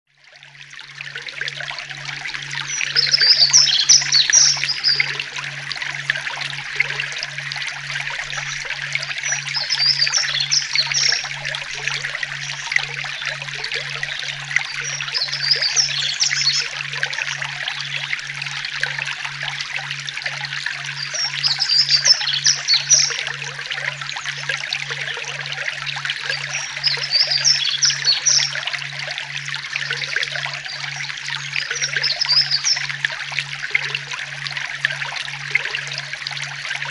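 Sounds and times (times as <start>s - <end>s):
stream water trickling: 0.1s - 36.9s
songbird chirping: 2.7s - 5.3s, 9.2s - 11.3s, 21.0s - 23.3s.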